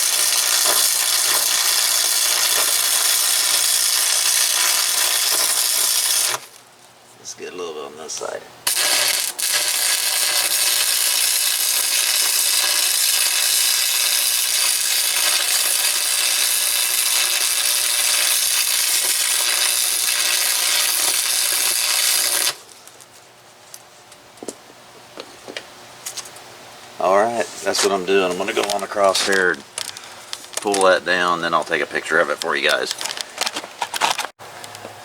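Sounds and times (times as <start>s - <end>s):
welding arc crackling hiss: 0.0s - 6.7s, 8.6s - 23.0s.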